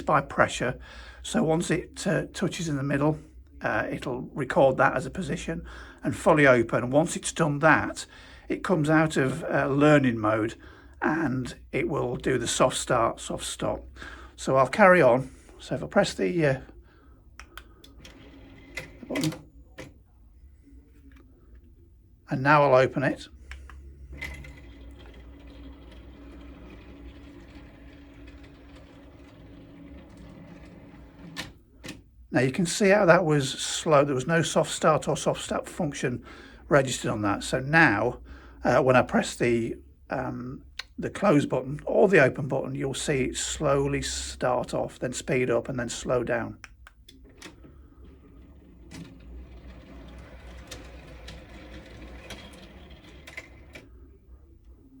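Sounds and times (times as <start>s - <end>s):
curtain motor humming: 17.8s - 19.9s, 24.0s - 32.0s, 47.1s - 54.0s.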